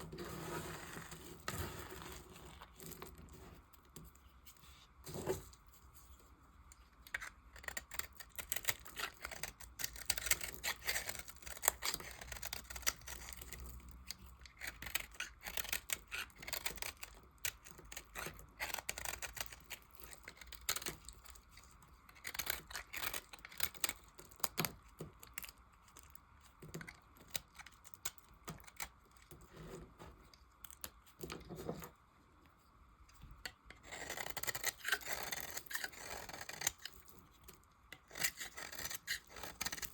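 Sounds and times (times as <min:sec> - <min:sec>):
knife crunching through soap: 0:07.1 - 0:29.6, 0:33.7 - 0:39.9.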